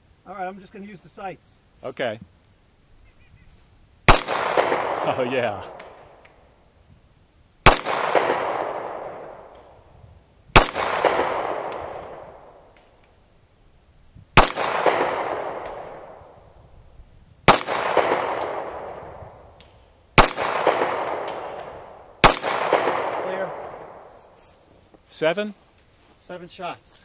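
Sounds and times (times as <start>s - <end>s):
handgun shots with echo: 14.4s - 16.0s, 17.5s - 19.0s.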